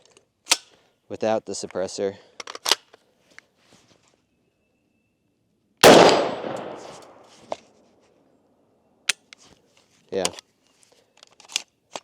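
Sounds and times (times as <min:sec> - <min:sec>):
rifle shot with echo: 0:05.8 - 0:07.3.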